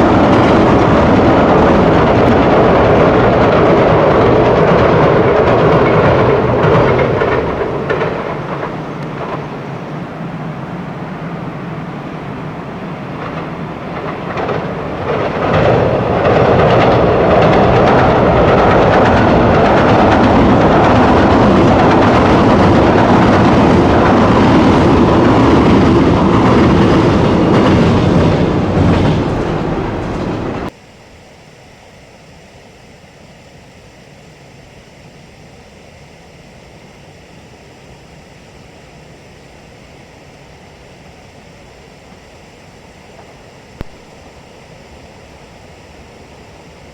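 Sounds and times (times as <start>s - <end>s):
steady rushing noise: 0.0s - 30.7s
train passing at speed: 0.0s - 30.8s.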